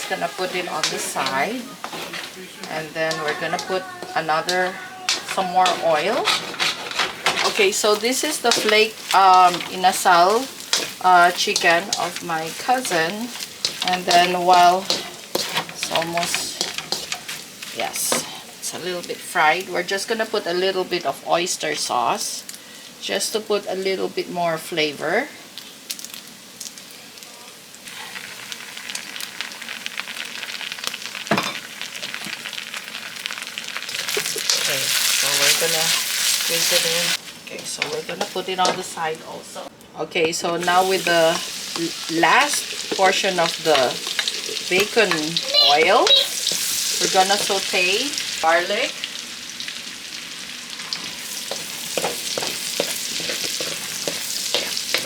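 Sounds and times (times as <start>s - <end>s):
utensil scraping a pan: 0.0s - 18.5s, 40.6s - 48.9s, 50.8s - 55.0s
chicken sizzling in hot oil: 0.0s - 39.7s, 40.6s - 55.0s.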